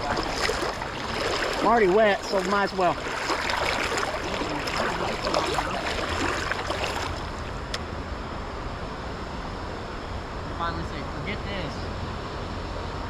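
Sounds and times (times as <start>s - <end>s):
wading through stream water: 0.0s - 7.7s.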